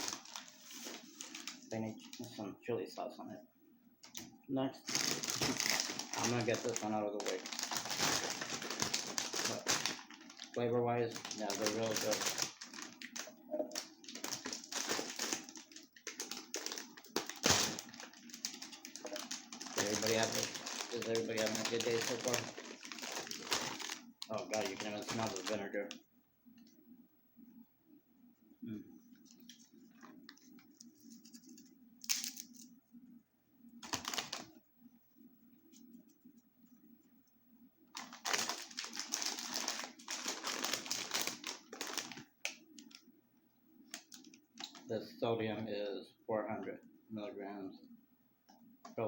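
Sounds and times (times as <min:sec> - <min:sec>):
snack bag crinkling: 0:00.0 - 0:01.7, 0:04.9 - 0:25.7, 0:31.3 - 0:32.7, 0:33.8 - 0:34.5, 0:37.9 - 0:43.0, 0:43.9 - 0:44.9.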